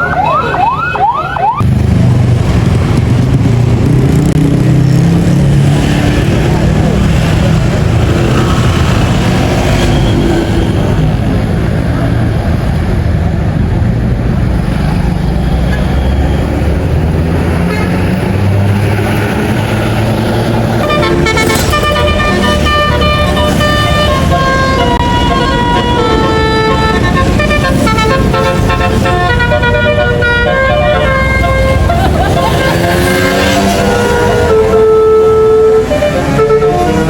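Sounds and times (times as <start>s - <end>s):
bus engine rumbling: 0.0s - 37.0s
musical horn melody: 20.8s - 37.0s.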